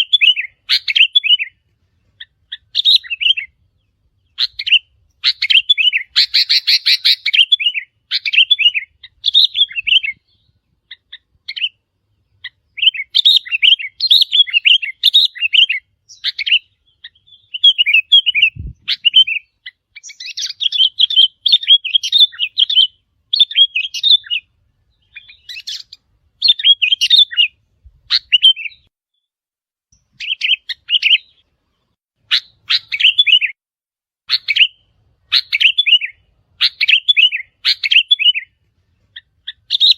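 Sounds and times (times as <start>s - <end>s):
bulbul chirping: 4.2s - 11.8s, 39.1s - 39.9s.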